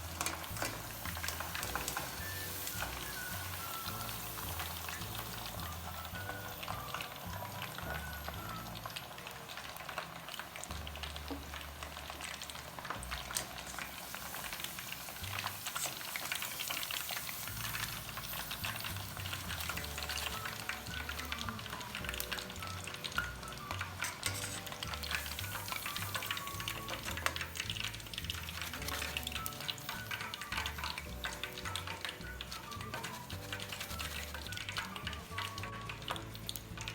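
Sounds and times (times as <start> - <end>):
background music with bass: 0.0 - 9.0, 17.5 - 36.9
food deep-frying in oil: 0.0 - 36.9.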